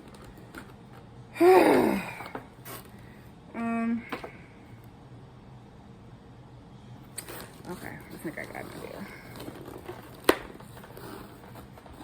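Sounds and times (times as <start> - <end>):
woman groaning: 1.4 - 2.3
woman humming: 1.4 - 2.3, 3.5 - 4.1.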